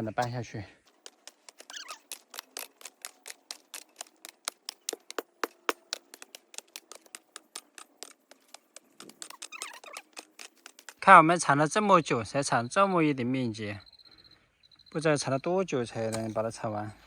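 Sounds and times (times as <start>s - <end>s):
shovels chopping into soil: 0.0s - 11.1s, 16.0s - 16.5s.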